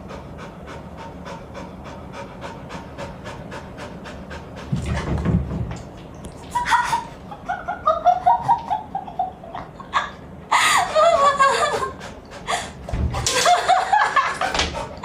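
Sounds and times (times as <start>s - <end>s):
person laughing: 6.5s - 14.6s.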